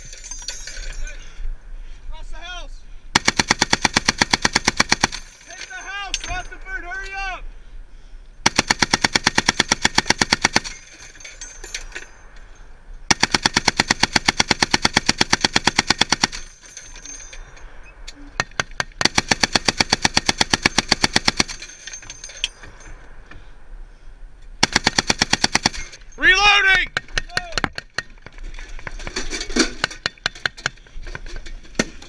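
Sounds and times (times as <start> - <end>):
fainter gunshots: 3.2 - 5.2, 8.4 - 10.8, 13.1 - 16.5, 24.6 - 26.0
machine gun firing bursts: 3.2 - 5.4, 8.4 - 10.9, 13.1 - 16.7, 19.0 - 21.8, 24.6 - 26.0.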